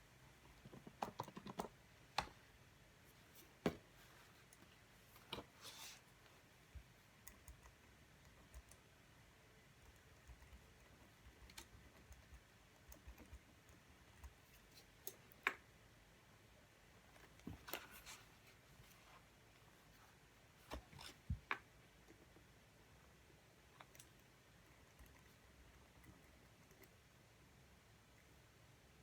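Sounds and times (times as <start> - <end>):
faint keyboard typing: 0.4 - 2.4, 6.7 - 9.0, 9.6 - 15.7, 23.6 - 27.2.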